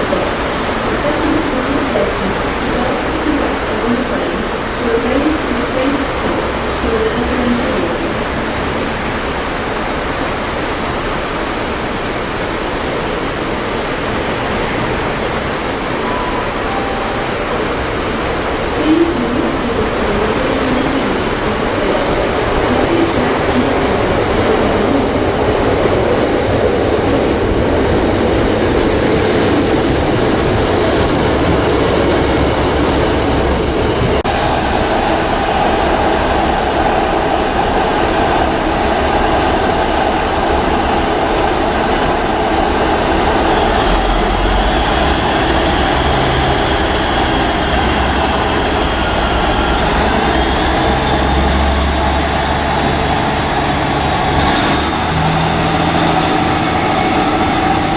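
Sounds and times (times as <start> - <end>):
train wheels rumbling on rail: 17.5 - 57.9.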